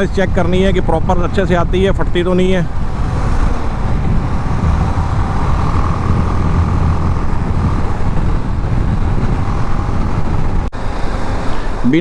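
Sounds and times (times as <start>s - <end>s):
road noise: 0.0s - 12.0s
wind rushing over microphone: 0.0s - 12.0s
motorcycle engine: 2.5s - 11.5s.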